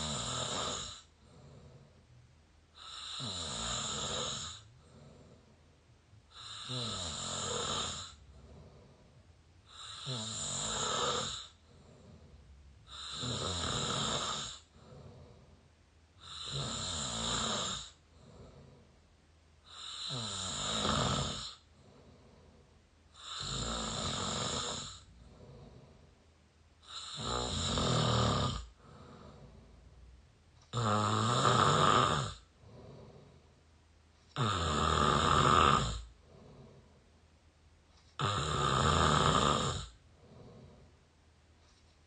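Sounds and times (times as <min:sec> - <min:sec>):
person mouth-snoring: 0:00.0 - 0:01.7, 0:02.8 - 0:05.3, 0:06.3 - 0:08.8, 0:09.7 - 0:12.2, 0:12.9 - 0:15.4, 0:16.2 - 0:18.7, 0:19.7 - 0:22.0, 0:23.1 - 0:25.9, 0:26.8 - 0:29.7, 0:30.7 - 0:33.2, 0:34.4 - 0:36.7, 0:38.2 - 0:40.8
soft breath: 0:00.8 - 0:02.2, 0:04.5 - 0:05.8, 0:08.1 - 0:09.8, 0:11.4 - 0:13.0, 0:14.6 - 0:15.7, 0:17.9 - 0:19.0, 0:21.6 - 0:22.8, 0:24.9 - 0:26.2, 0:28.6 - 0:30.1, 0:32.4 - 0:33.7, 0:36.0 - 0:37.3, 0:39.8 - 0:42.0.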